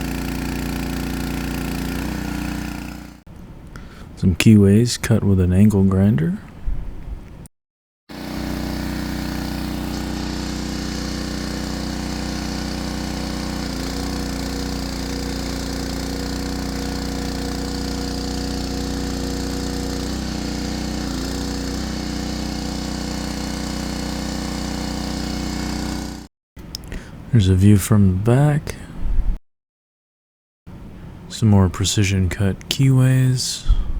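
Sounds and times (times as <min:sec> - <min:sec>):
small engine running: 0:00.0 - 0:03.3, 0:08.1 - 0:26.3.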